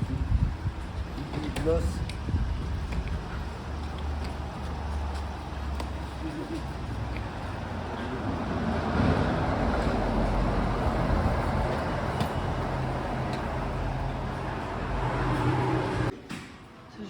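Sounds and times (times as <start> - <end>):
vehicle engine hum: 0.0 - 16.2
road noise: 0.0 - 16.9.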